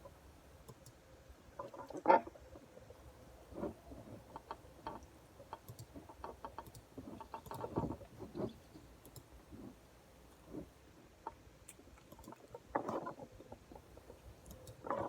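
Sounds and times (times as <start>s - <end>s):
mouse and keyboard clicks: 4.4s - 9.3s, 11.7s - 13.1s, 14.4s - 15.0s.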